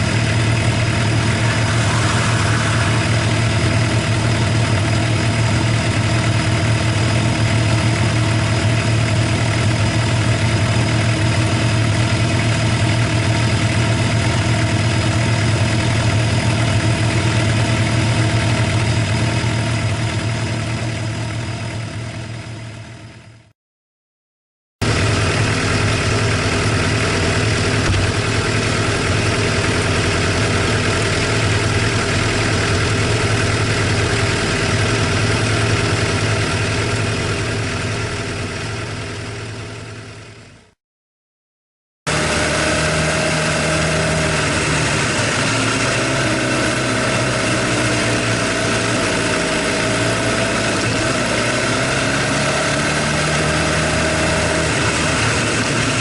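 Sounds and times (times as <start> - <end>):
motorcycle engine idling: 0.0 - 23.5, 24.8 - 40.7.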